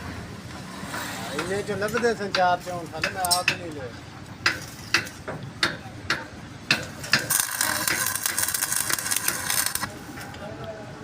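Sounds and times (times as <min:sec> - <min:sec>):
sharp metal taps: 0:01.4 - 0:03.8, 0:04.4 - 0:09.4
crackle of metalwork: 0:01.8 - 0:10.8.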